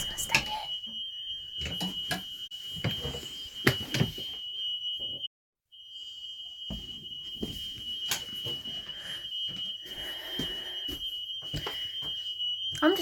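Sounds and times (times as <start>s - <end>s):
fire alarm steady high tone: 0.0s - 13.0s.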